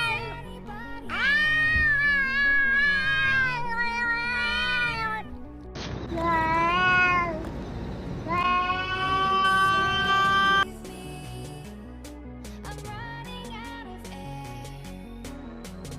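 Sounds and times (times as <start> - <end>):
background music: 0.0 - 7.5, 8.2 - 15.9
cat yowling: 1.2 - 5.2, 6.2 - 7.4, 8.3 - 10.6.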